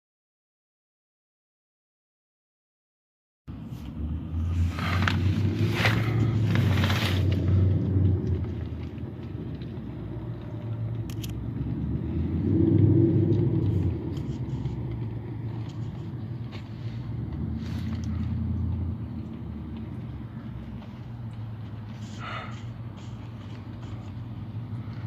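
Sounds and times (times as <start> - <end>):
van engine rumbling and knocking: 3.5 - 12.4, 13.4 - 25.0
sharp clicks: 11.0 - 11.4.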